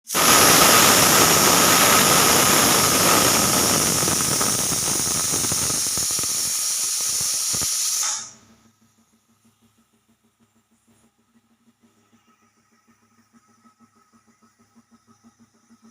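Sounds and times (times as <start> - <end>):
pressure cooker whistle: 0.1 - 8.4.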